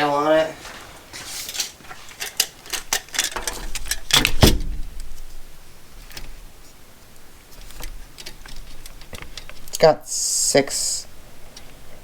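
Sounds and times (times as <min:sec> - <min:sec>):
switch clicks and rattles: 0:02.2 - 0:05.3.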